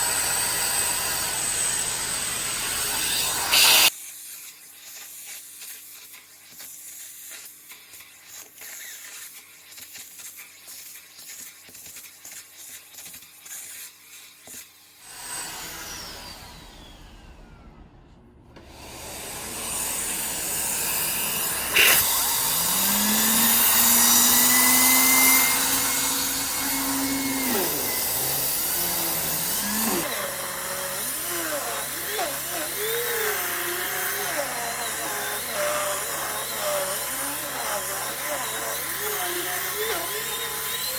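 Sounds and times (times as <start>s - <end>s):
vacuum cleaner motor: 0.0s - 4.0s, 14.3s - 40.9s.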